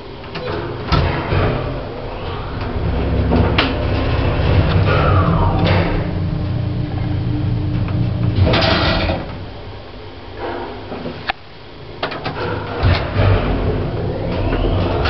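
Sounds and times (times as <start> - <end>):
machinery hum: 0.0 - 15.0
lift door scraping slide: 0.5 - 9.3.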